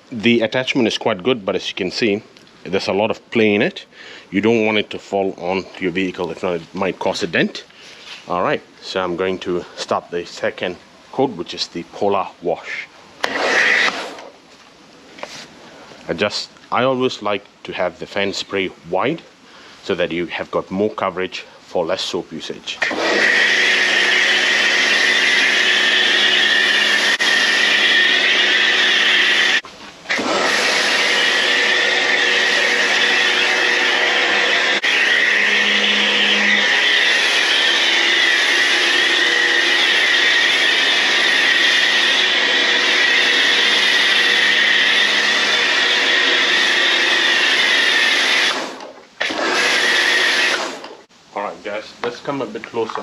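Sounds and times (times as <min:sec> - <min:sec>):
pressure washer motor whine: 0:22.8 - 0:51.0.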